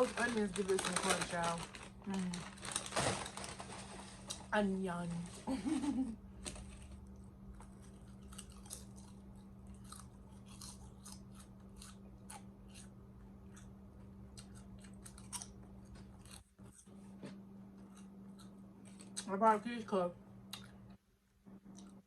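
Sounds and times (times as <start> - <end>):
steady low hum: 0.0 - 22.0
crunchy chewing: 6.5 - 19.3, 21.6 - 22.0.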